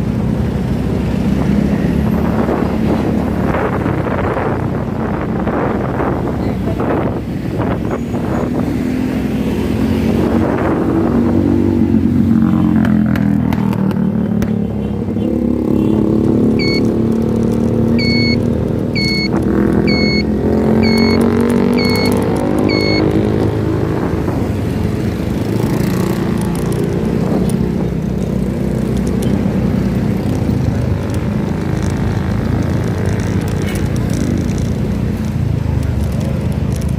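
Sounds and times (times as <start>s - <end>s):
short high-pitched beeps: 16.6s - 16.9s, 18.0s - 18.4s, 19.0s - 23.2s.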